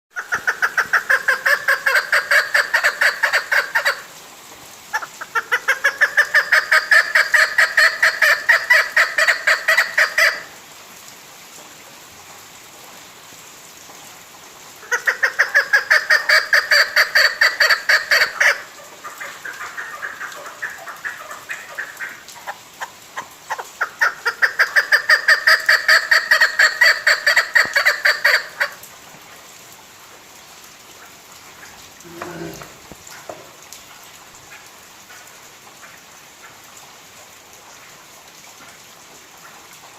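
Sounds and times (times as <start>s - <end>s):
partridge clucking calls: 0.2s - 4.1s, 4.9s - 10.5s, 14.8s - 28.8s.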